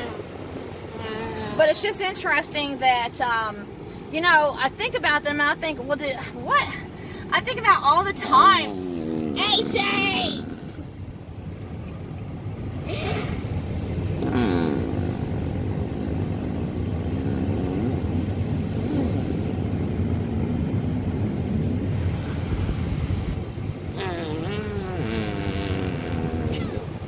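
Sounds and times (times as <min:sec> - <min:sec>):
raspberry blown on skin: 0:14.2 - 0:16.2, 0:24.0 - 0:27.0.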